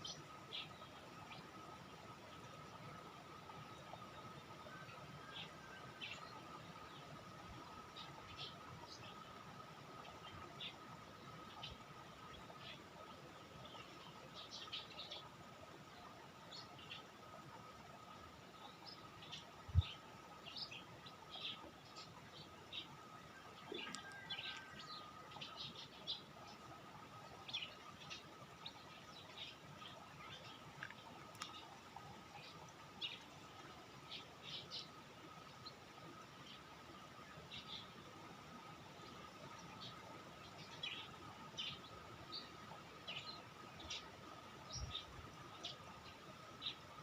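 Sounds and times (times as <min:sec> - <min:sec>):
small songbirds chirping: 0:00.0 - 0:47.0
small birds chirping: 0:18.0 - 0:36.7.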